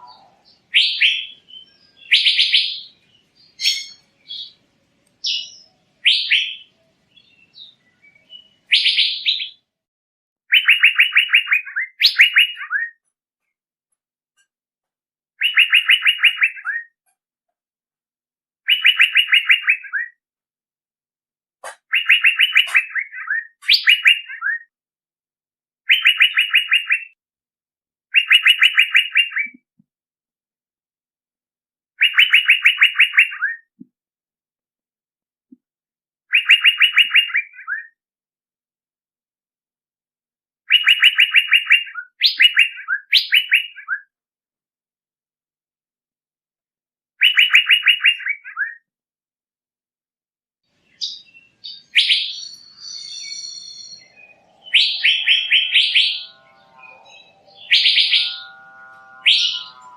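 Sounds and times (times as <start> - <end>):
bird calling rapid notes: 21.6 - 24.6, 51.0 - 59.9.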